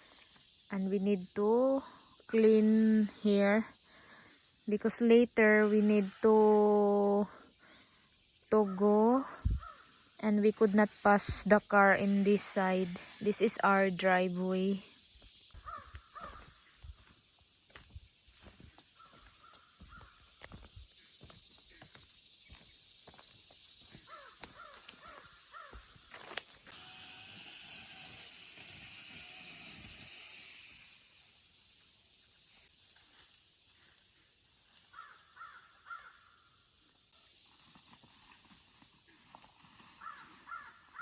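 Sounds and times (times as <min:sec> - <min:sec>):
crows cawing: 0:15.6 - 0:16.5, 0:24.1 - 0:25.8, 0:34.9 - 0:36.2, 0:40.0 - 0:41.0.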